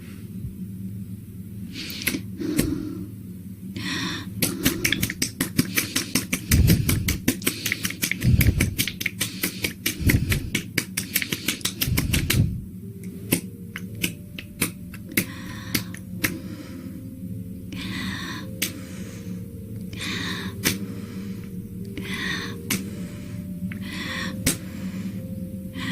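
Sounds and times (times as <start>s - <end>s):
soft low swells: 0.0s - 5.5s, 11.7s - 25.9s
soft breath: 1.7s - 3.2s, 3.8s - 14.0s, 15.0s - 25.9s
wet sticky clicking: 4.4s - 12.4s, 13.0s - 16.4s.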